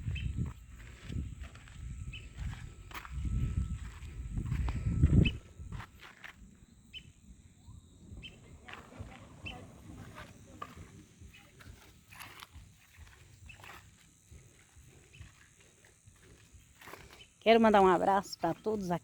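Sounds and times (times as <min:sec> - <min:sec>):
birds chirping: 0:00.0 - 0:05.6, 0:06.8 - 0:19.0
wind rumble on microphone: 0:00.0 - 0:06.0.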